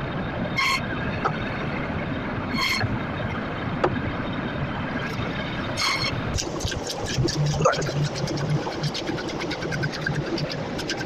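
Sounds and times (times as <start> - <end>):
busy traffic: 0.0 - 11.0.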